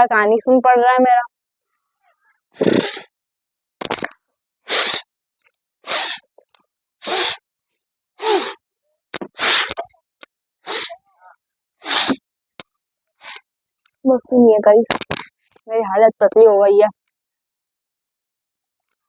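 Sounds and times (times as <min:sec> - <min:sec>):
person blowing nose: 0:02.6 - 0:03.1, 0:04.6 - 0:05.1, 0:05.8 - 0:06.3, 0:07.0 - 0:07.4, 0:08.2 - 0:08.6, 0:09.2 - 0:09.8, 0:10.6 - 0:11.0, 0:11.8 - 0:12.2, 0:13.2 - 0:13.4.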